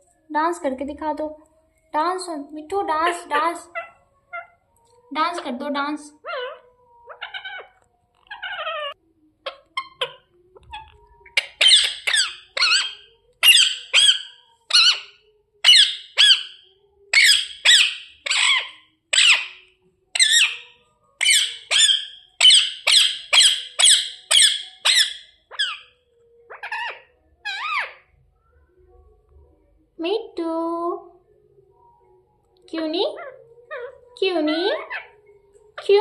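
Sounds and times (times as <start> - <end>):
parrot chattering and squawking: 3.1 - 4.6, 6.2 - 25.9, 26.5 - 28.1, 33.2 - 35.2.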